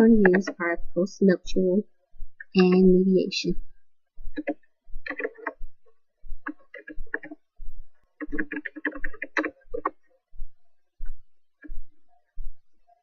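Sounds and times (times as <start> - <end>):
keyboard typing: 0.0 - 0.8, 2.4 - 3.2, 4.3 - 5.6, 6.4 - 7.4, 8.1 - 10.0.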